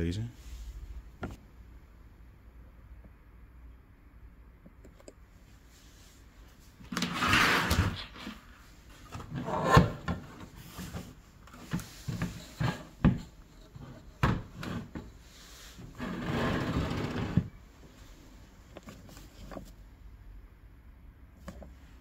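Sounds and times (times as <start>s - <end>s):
rubbing and scraping: 6.9s - 17.5s.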